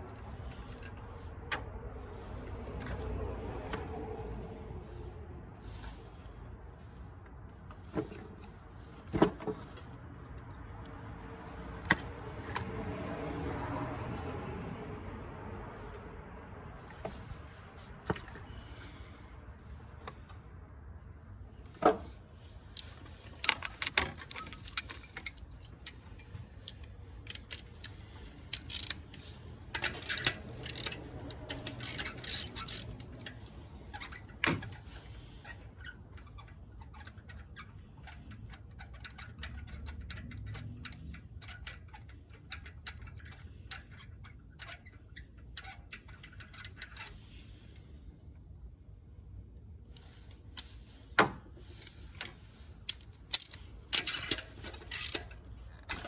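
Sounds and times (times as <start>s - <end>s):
hand tools clinking: 22.7s - 34.1s, 51.6s - 56.0s
socket ratchet clicking: 23.5s - 33.3s.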